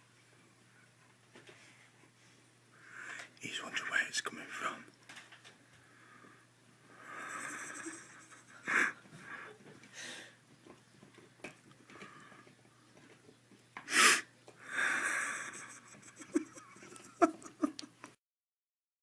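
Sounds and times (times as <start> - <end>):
breathy exhale: 8.8 - 10.4.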